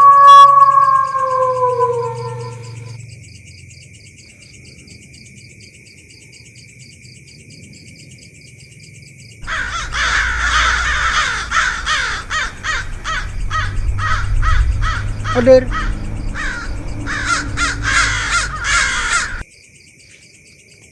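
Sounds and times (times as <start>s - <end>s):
insect trilling: 0.0s - 3.0s, 9.4s - 19.4s
fast pulsing chirp: 9.4s - 19.4s
harsh repeated bird-like calls: 9.4s - 19.4s.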